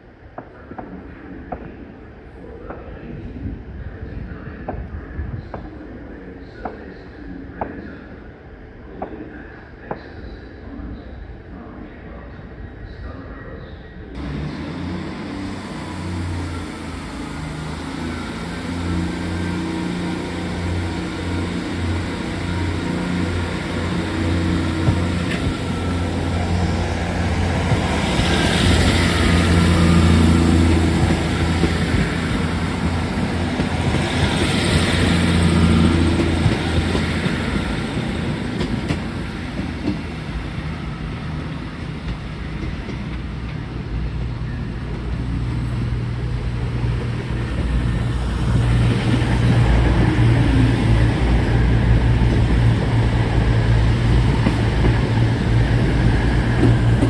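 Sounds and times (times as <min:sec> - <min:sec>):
train rumbling: 0:14.0 - 0:57.0.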